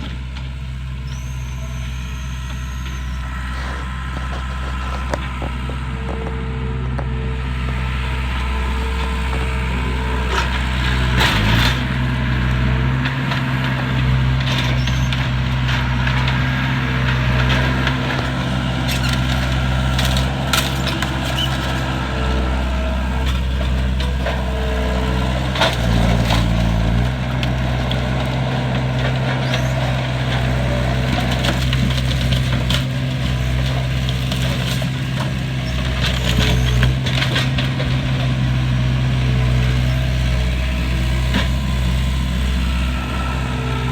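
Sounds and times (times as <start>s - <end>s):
heavy machine engine running: 0.0s - 43.9s
timbers cracking and splintering: 12.8s - 38.8s.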